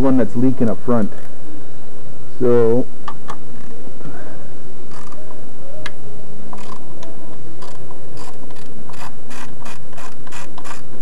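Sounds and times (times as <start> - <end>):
hand ratchet clicking: 4.9 - 5.2, 6.5 - 6.8, 7.6 - 11.0.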